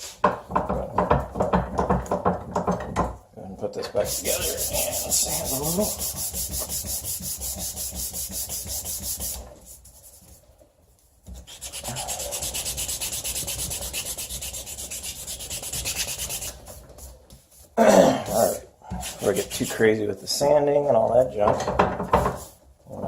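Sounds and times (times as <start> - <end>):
sanding wood: 4.0 - 10.4, 11.3 - 17.1, 18.4 - 19.8.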